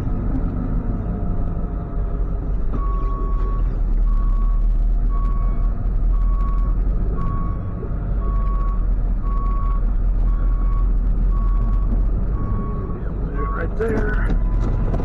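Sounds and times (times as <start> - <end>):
truck engine idling: 0.0 - 15.0
reversing alarm beeping: 8.2 - 15.0.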